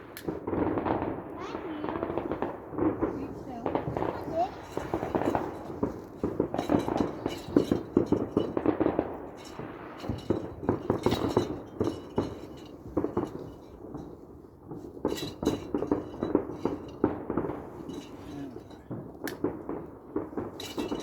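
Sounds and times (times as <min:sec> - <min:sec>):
fireworks crackling and popping: 0:00.0 - 0:21.0.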